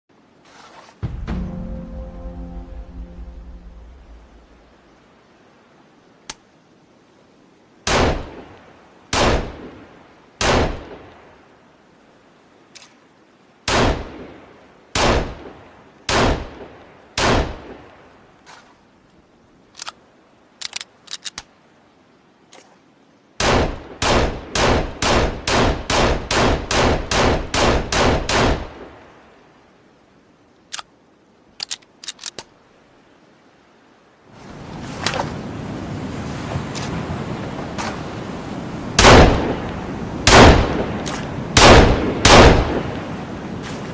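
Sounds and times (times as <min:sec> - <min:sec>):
steady rushing noise: 0:00.1 - 0:06.0
faint clicks: 0:06.2 - 0:06.5, 0:20.6 - 0:21.5, 0:30.7 - 0:30.9
pistol gunshots with echo: 0:39.0 - 0:39.6, 0:40.2 - 0:40.9, 0:41.6 - 0:42.9.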